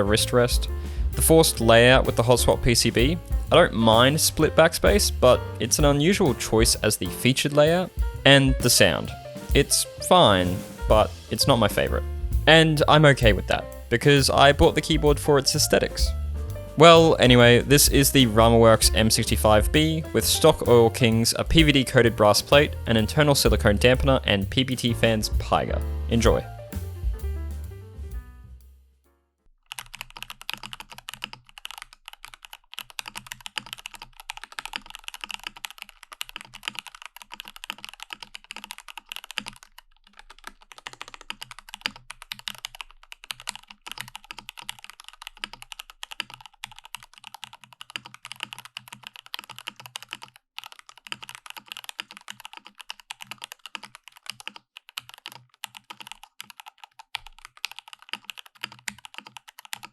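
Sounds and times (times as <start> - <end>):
mechanical keyboard typing: 29.7 - 59.9.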